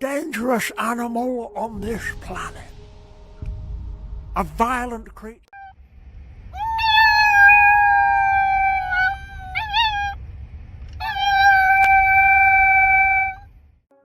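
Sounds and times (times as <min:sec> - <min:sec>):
small pet howling: 0:06.5 - 0:10.2, 0:11.0 - 0:13.5.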